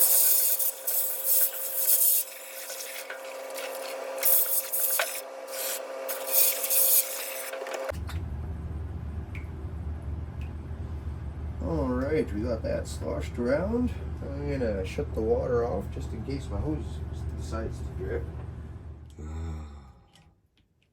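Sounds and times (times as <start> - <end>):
water sloshing in washing machine: 0.0 - 4.9.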